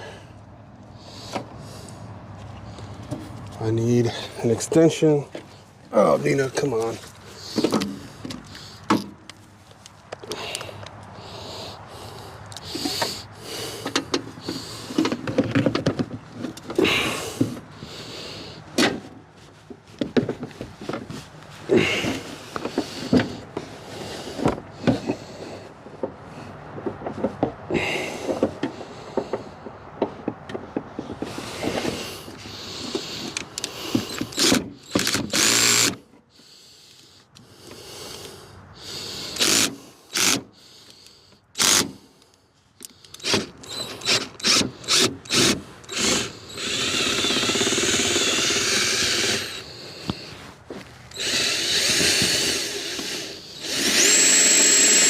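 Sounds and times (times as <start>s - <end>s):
tools and parts clattering: 13.9s - 17.6s
power drill running: 33.9s - 36.0s, 39.3s - 40.4s, 41.6s - 41.9s, 43.2s - 50.3s, 51.1s - 55.0s.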